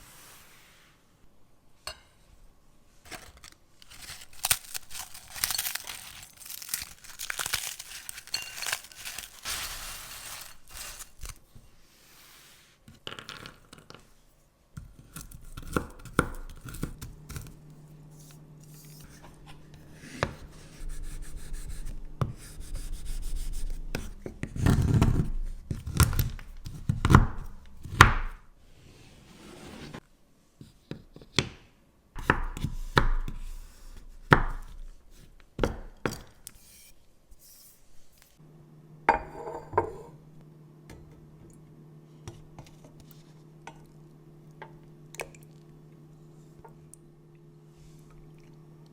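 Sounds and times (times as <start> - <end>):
food packaging crinkling: 3.0 - 11.5
low steady hum: 14.2 - 28.6, 32.2 - 48.9.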